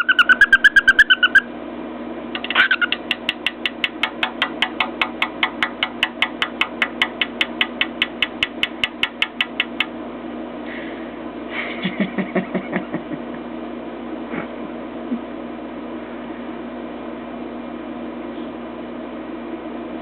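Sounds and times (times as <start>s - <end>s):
bird beak tapping on mirror: 2.4s - 9.9s.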